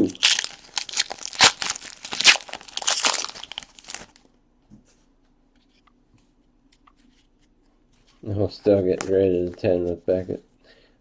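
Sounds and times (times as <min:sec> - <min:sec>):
plastic wrapper crinkling and tearing: 0:00.0 - 0:04.3.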